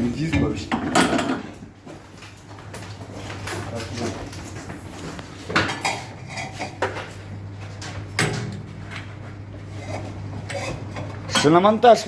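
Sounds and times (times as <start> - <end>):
steady low hum: 0.0 - 12.0
metal tools clanking: 3.3 - 4.4.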